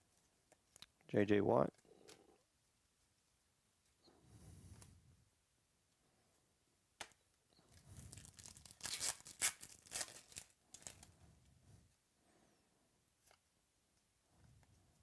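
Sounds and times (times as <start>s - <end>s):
foil wrapper tearing and crinkling: 8.0s - 11.1s.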